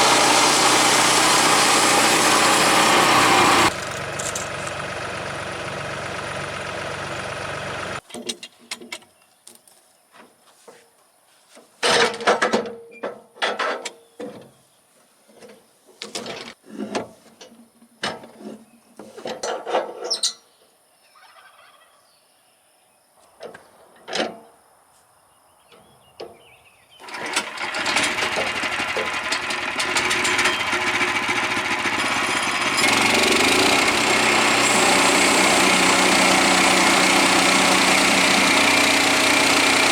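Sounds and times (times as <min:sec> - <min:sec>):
small gasoline engine running: 0:00.0 - 0:08.0, 0:27.0 - 0:39.9.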